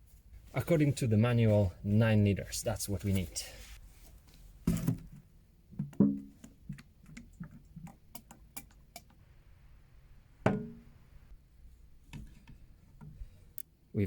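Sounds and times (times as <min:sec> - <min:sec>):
hollow knocks of oil containers: 0:04.6 - 0:08.3, 0:10.4 - 0:11.0.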